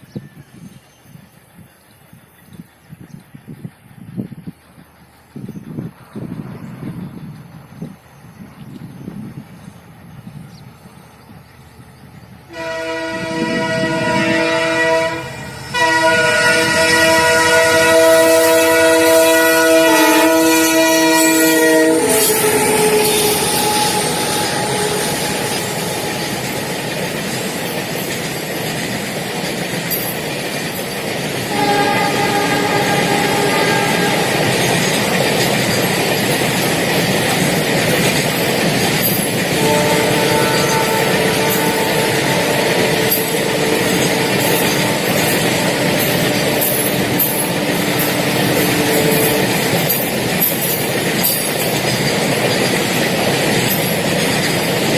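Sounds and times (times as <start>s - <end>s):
train rumble: 0.0s - 54.9s
train wheels clacking on rails: 0.0s - 54.9s
locomotive horn blast: 12.5s - 27.1s, 31.5s - 34.8s, 39.5s - 50.0s.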